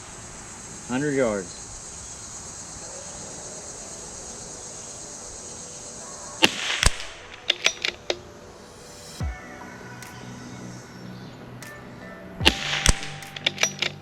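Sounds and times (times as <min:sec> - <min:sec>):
insect hiss: 0:00.0 - 0:12.0.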